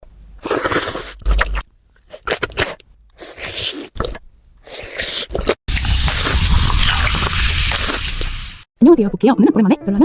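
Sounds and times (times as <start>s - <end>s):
crunchy bites and chewing: 0.4s - 8.4s.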